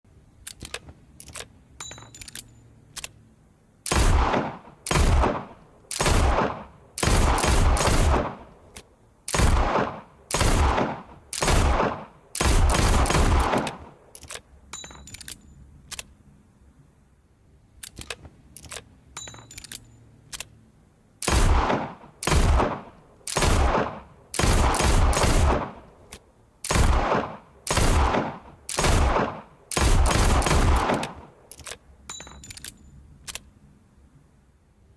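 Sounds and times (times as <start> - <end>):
light gun clicks: 0.4 - 3.2, 3.8 - 9.6, 11.3 - 16.2, 17.8 - 20.6, 21.2 - 33.6
revolver gunshots with echo: 3.9 - 8.5, 9.3 - 14.0, 21.2 - 25.9, 26.7 - 31.3.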